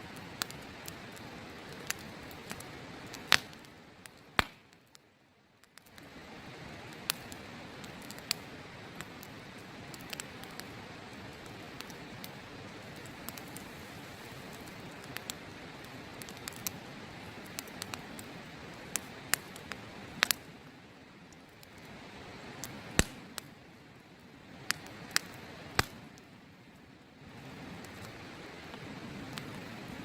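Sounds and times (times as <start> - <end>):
campfire crackling: 0.0 - 30.0
steady rushing hiss: 0.0 - 30.0
sharp pops: 4.4 - 4.6.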